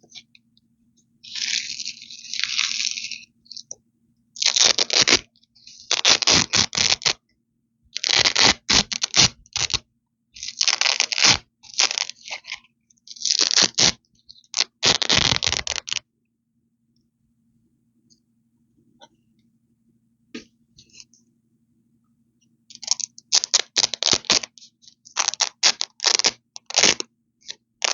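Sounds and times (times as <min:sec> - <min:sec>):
velcro ripping: 0:01.2 - 0:03.2, 0:04.4 - 0:07.2, 0:08.0 - 0:09.8, 0:10.4 - 0:16.0, 0:22.8 - 0:27.1.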